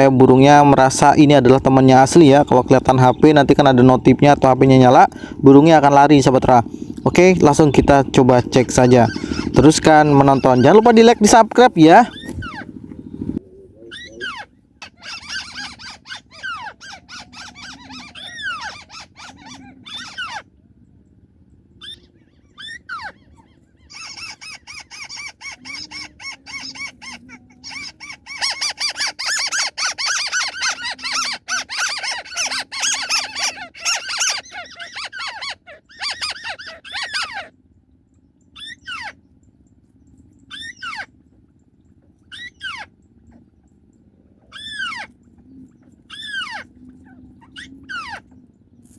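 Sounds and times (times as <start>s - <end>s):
bird calls played back: 7.3s - 12.7s, 13.4s - 20.6s, 21.8s - 37.6s, 38.5s - 39.3s, 40.4s - 41.2s, 42.3s - 43.0s, 44.4s - 48.4s.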